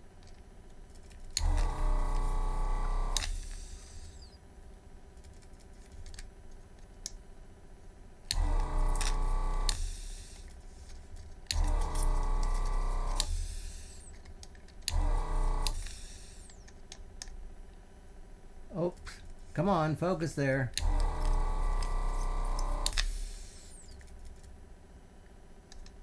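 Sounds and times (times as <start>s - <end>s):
vacuum pump running: 1.4s - 4.4s, 8.3s - 10.6s, 11.5s - 14.2s, 14.8s - 16.7s, 20.7s - 24.2s.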